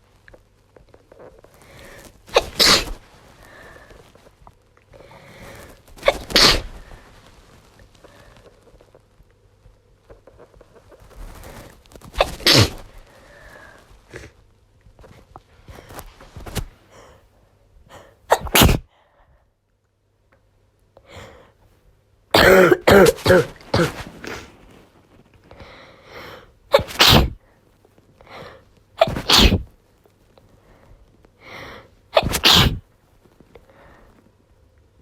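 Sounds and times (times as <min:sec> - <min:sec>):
woman sneezing: 0:02.3 - 0:03.0, 0:06.0 - 0:06.8, 0:12.2 - 0:12.9, 0:18.3 - 0:18.9, 0:22.4 - 0:24.5, 0:26.7 - 0:27.4, 0:29.0 - 0:29.7, 0:32.2 - 0:32.8.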